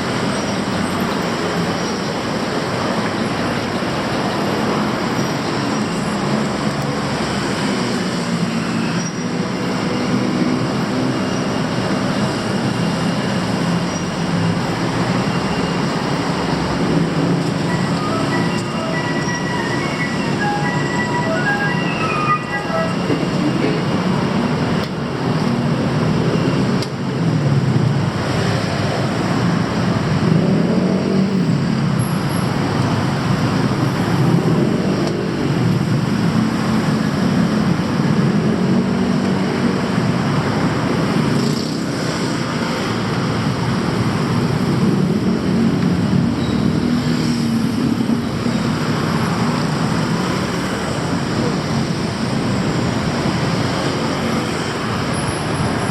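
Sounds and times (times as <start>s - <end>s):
heavy road traffic: 0.0s - 55.9s.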